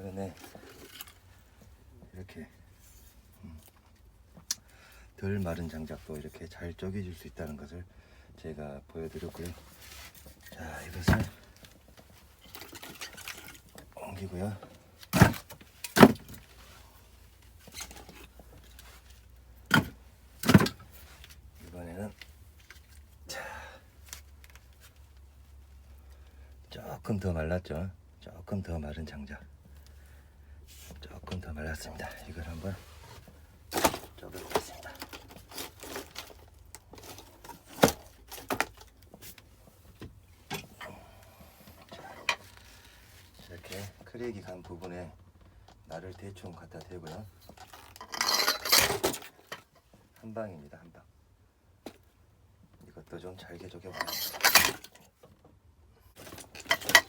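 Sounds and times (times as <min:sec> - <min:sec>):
wooden knocks of firewood logs: 0:15.1 - 0:16.3.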